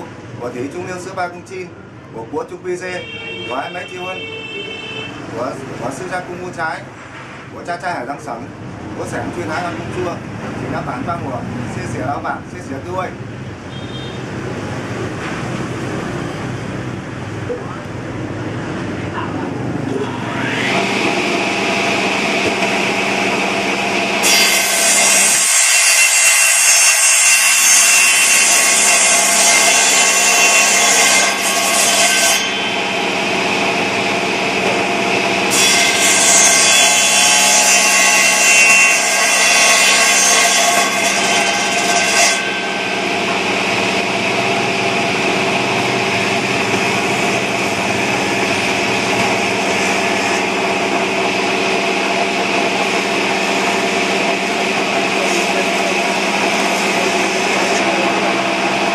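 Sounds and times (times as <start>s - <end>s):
saw cutting wood with harsh hiss: 20.3s - 34.0s, 34.9s - 42.8s, 52.1s - 58.9s.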